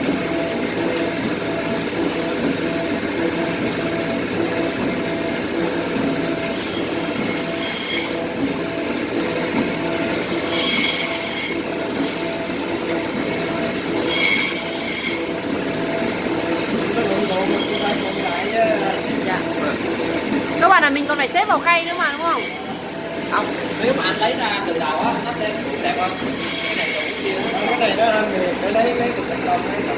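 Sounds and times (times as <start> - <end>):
slicing machine humming: 0.0 - 29.9
blade screeching scrape: 14.0 - 15.2, 25.8 - 27.8.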